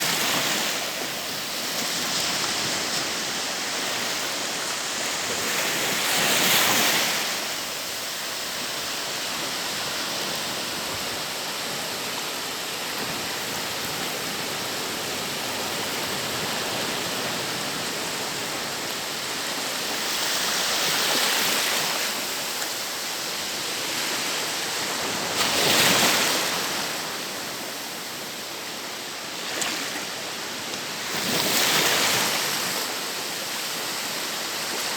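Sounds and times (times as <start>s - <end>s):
loud waves crashing: 0.0s - 9.7s
waves breaking on a beach: 0.0s - 34.9s.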